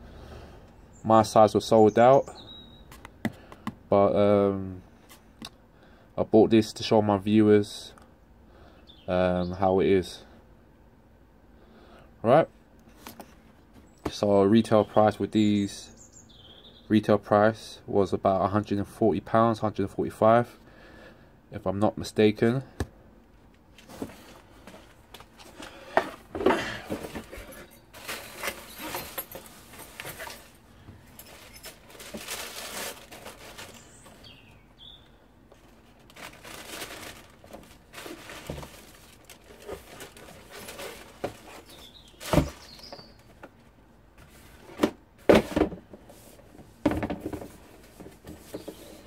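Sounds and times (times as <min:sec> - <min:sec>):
packaging rustling: 0:26.9 - 0:30.6, 0:31.2 - 0:34.3, 0:35.6 - 0:42.8.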